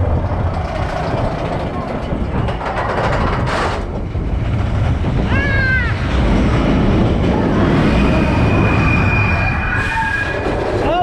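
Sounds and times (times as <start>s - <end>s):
roller coaster rumbling on track: 0.0s - 11.0s
wind on microphone: 0.0s - 11.0s
high-pitched squeal: 5.5s - 10.9s.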